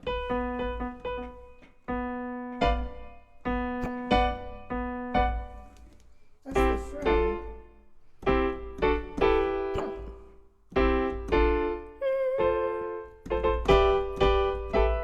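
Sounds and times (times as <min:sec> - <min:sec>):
piano chords: 0:00.0 - 0:05.8, 0:06.4 - 0:15.0.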